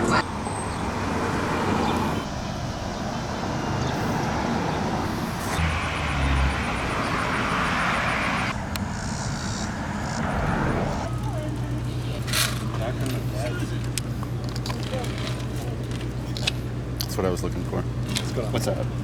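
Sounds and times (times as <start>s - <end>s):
traffic rumble: 0.0s - 19.0s.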